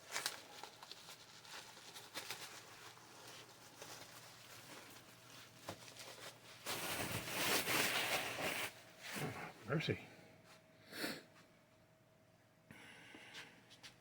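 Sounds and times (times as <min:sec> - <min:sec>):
packing material rustling: 0:00.0 - 0:09.2
crinkling rustle: 0:00.0 - 0:09.3.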